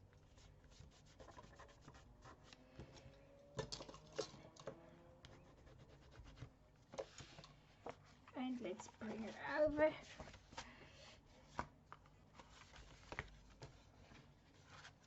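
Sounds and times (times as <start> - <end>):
paper rustling and rubbing: 5.9 - 11.7, 12.3 - 15.0.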